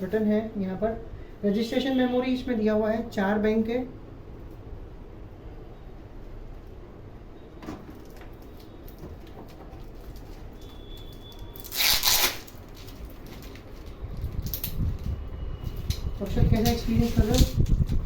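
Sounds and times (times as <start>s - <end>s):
packaging rustle: 7.8s - 18.0s.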